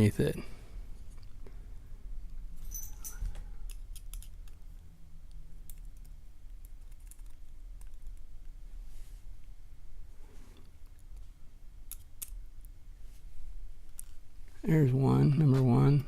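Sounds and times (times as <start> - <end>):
metallic clicks of lock picking: 2.7 - 4.6.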